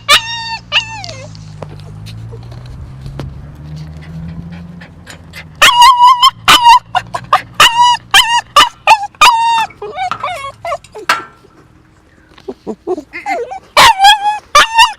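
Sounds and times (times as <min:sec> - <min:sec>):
dog yelping and whining: 0:00.0 - 0:02.6, 0:05.1 - 0:11.2, 0:12.5 - 0:14.9.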